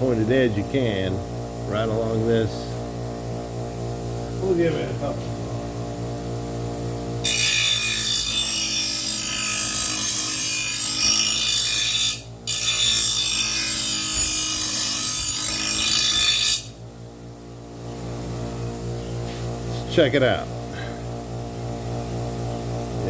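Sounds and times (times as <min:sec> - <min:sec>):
blade grinding on grinder stone: 0:07.2 - 0:16.8.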